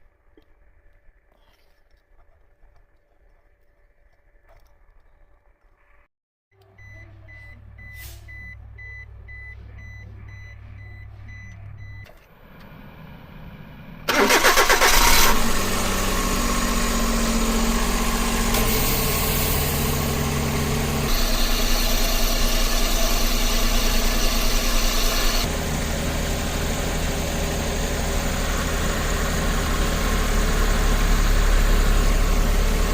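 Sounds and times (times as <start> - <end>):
low hum: 0.0 - 14.3
abnormal compressor noise: 0.0 - 32.9
engine idling: 0.0 - 32.9
dashboard warning beeps: 6.6 - 12.1
engine cranking and starting: 14.0 - 32.9.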